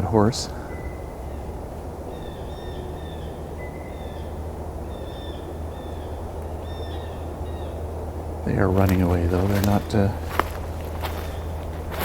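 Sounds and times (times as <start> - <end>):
steady low rumble: 0.0 - 12.0
small bird high calls: 0.6 - 7.9.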